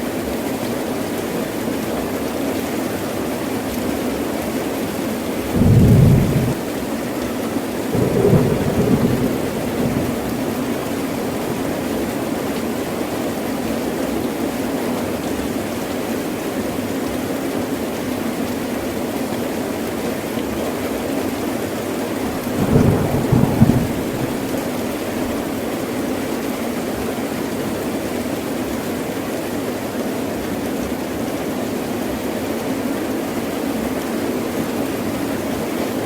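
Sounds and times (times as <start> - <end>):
heavy rain: 0.0 - 36.0
thunder: 5.5 - 6.6, 8.0 - 12.2, 22.4 - 25.4.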